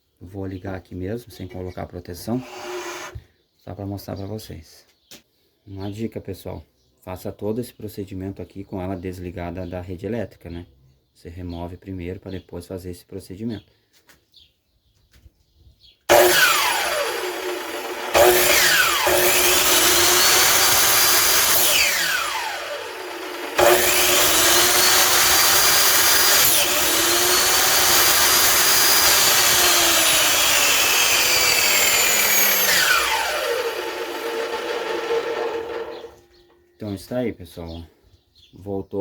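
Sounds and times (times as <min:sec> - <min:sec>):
miter saw motor whining: 0:02.3 - 0:03.2, 0:16.1 - 0:36.3.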